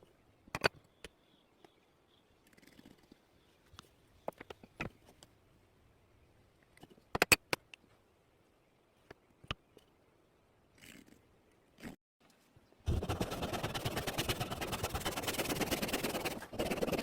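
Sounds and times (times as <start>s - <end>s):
rattle of rapid tool strokes: 12.9s - 17.0s.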